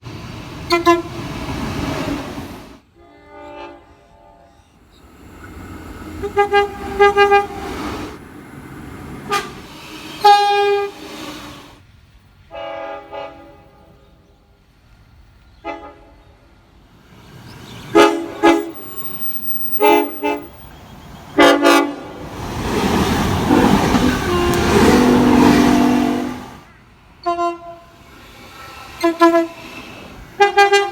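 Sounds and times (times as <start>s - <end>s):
train rushing: 0.0s - 30.9s
locomotive air horn blasts: 0.7s - 1.2s, 2.9s - 4.8s, 6.2s - 8.1s, 9.2s - 11.1s, 12.5s - 14.2s, 15.6s - 16.4s, 17.9s - 20.7s, 21.4s - 22.2s, 23.4s - 28.0s, 29.0s - 29.7s, 30.4s - 30.9s.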